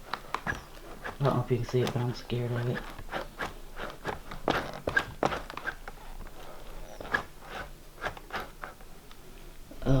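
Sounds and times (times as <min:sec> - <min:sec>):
small knocks and clicks: 0:00.0 - 0:03.5.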